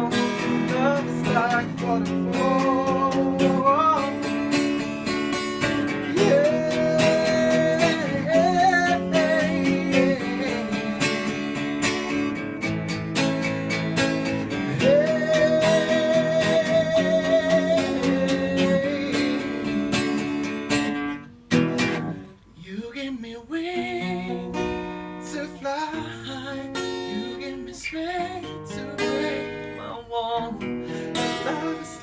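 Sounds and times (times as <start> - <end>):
strummed acoustic guitar: 0.0 - 32.0
voice holding wordless notes: 6.1 - 11.3, 14.7 - 19.9.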